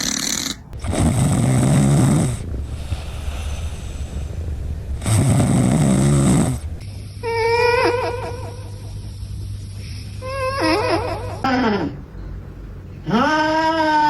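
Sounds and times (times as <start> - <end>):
cat snoring breath: 0.0 - 3.6
cat high wavering cry: 13.1 - 14.0.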